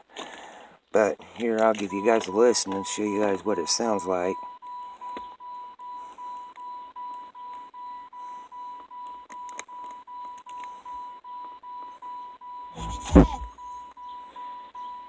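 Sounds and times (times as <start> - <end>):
pulsing high electronic beep: 12.8 - 13.6.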